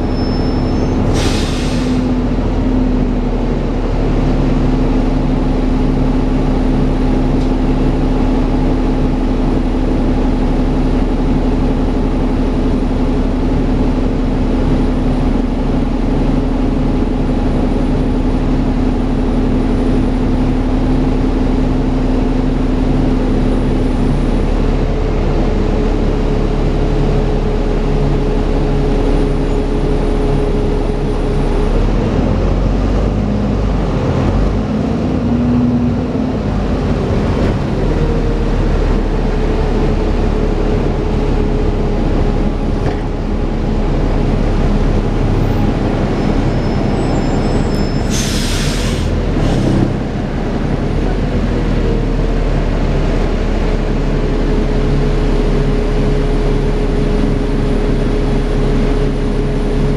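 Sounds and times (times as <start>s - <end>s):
diesel bus engine running: 0.0s - 59.9s.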